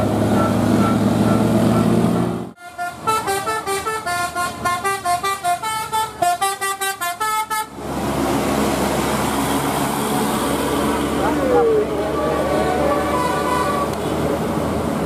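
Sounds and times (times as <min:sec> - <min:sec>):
multi-tone bus horn tune: 0:00.0 - 0:07.8, 0:11.9 - 0:14.3
engine noise: 0:00.0 - 0:15.0.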